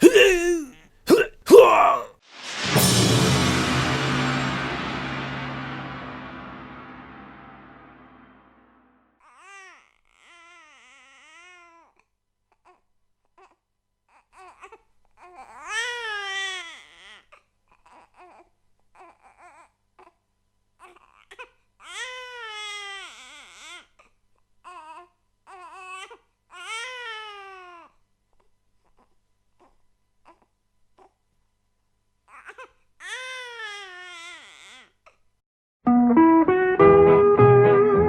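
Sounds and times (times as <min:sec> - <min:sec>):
baby crying: 0:00.0 - 0:00.8
gong ringing: 0:02.7 - 0:08.9.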